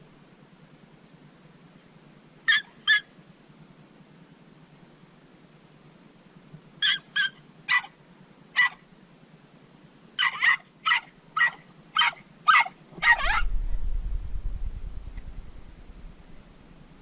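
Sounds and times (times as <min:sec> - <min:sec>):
dog barking: 0:02.5 - 0:03.1, 0:06.8 - 0:08.0, 0:08.6 - 0:08.8, 0:10.2 - 0:13.5
low rumble: 0:13.0 - 0:17.0.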